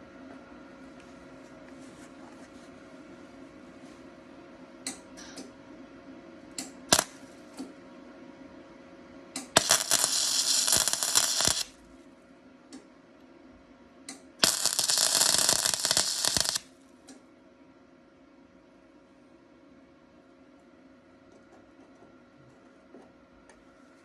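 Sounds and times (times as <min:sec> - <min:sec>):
welding arc crackling: 0:06.9 - 0:07.2, 0:09.5 - 0:11.8, 0:14.4 - 0:16.6.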